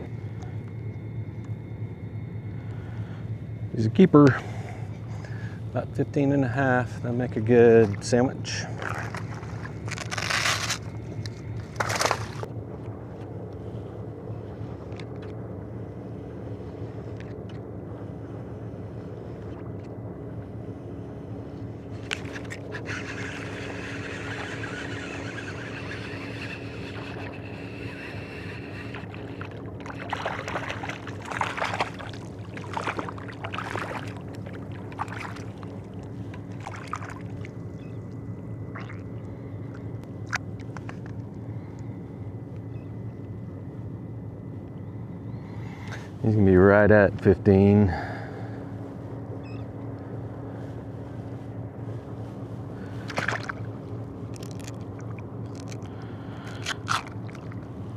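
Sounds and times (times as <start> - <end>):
boat engine humming: 0.0 - 57.9
water splashes: 7.8 - 10.8, 22.0 - 37.6, 38.7 - 39.1, 52.8 - 53.7, 54.3 - 57.8.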